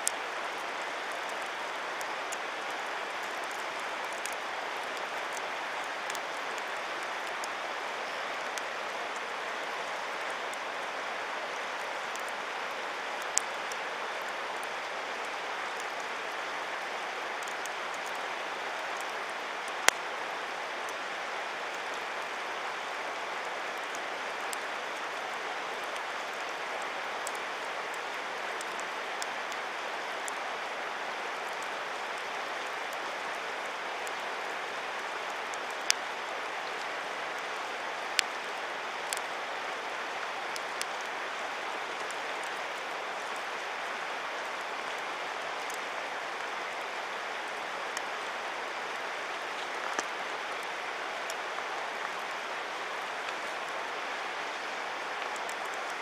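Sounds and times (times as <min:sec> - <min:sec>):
campfire crackling and popping: 0:00.0 - 0:09.3, 0:11.7 - 0:12.4, 0:13.2 - 0:14.7, 0:17.4 - 0:18.2, 0:28.4 - 0:30.4, 0:35.2 - 0:36.9, 0:38.1 - 0:38.4, 0:39.0 - 0:39.3, 0:40.5 - 0:41.1, 0:45.6 - 0:45.9, 0:55.2 - 0:56.0.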